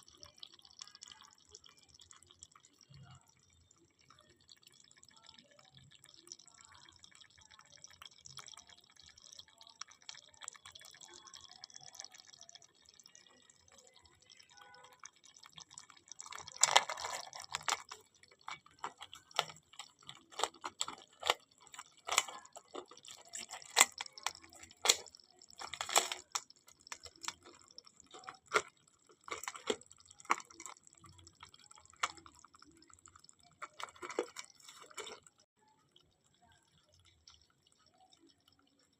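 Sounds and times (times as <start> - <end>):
crabs clicking and knocking: 0.0 - 38.9
crabs crackling: 7.8 - 35.5.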